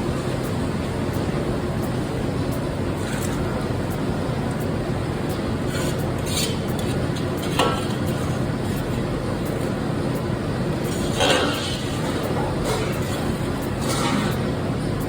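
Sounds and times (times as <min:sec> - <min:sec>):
kitchen background noise: 0:10.7 - 0:15.0.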